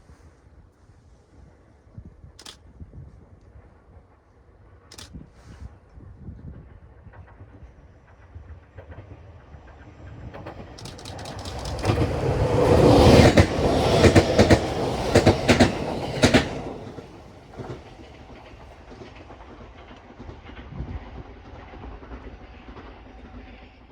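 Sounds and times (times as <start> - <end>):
train rumble: 2.4 - 23.9
wheels clattering over rail joints: 10.3 - 19.2.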